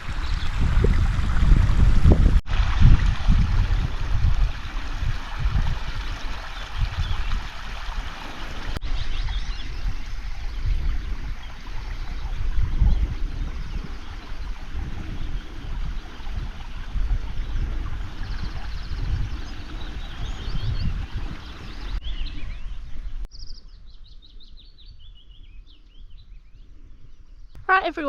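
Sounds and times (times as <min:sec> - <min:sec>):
river running: 0:00.0 - 0:22.0
birds chirping: 0:05.8 - 0:28.0.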